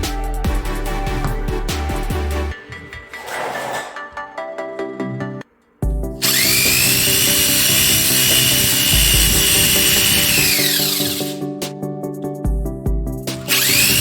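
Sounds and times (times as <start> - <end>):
background music: 0.0 - 14.0
power tool whining: 6.2 - 11.4, 13.4 - 14.0.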